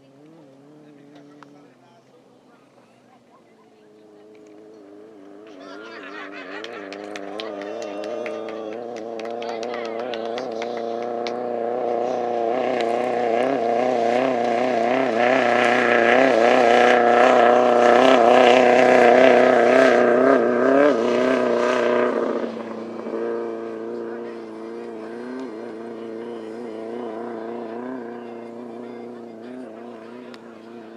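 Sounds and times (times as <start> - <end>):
race car engine driving past: 0.0 - 30.9.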